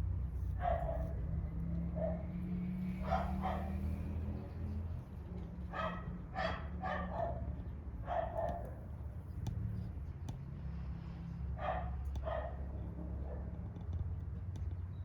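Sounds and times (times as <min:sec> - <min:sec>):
dog barking: 0:00.6 - 0:01.3, 0:01.9 - 0:04.3, 0:05.7 - 0:08.9, 0:11.5 - 0:12.6, 0:13.2 - 0:13.6.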